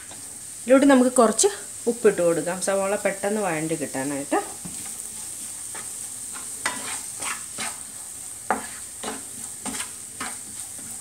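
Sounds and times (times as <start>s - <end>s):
onions sizzling in oil: 0.0s - 11.0s
utensil scraping and knocking pan: 5.7s - 7.8s, 8.5s - 11.0s.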